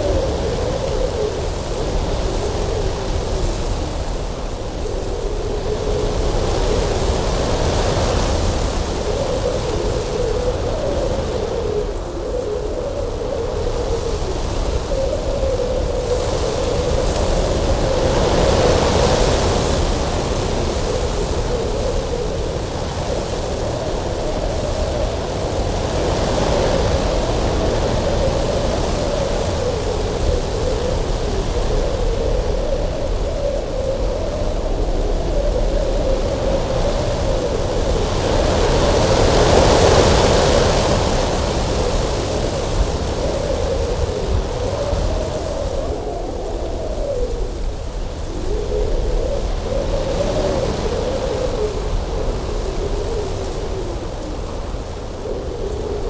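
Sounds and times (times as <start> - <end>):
low whistling wind: 0.0 - 56.0
strong wind blowing: 0.0 - 56.0.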